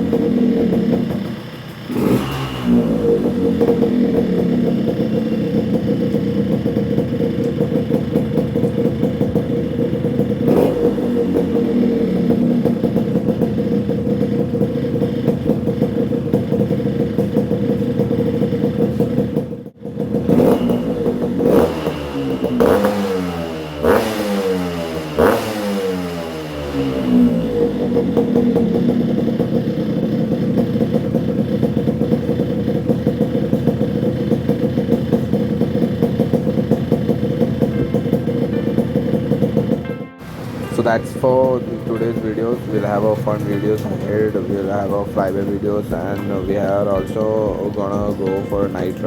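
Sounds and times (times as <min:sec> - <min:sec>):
two-stroke motorcycle engine revving: 0:00.0 - 0:49.0.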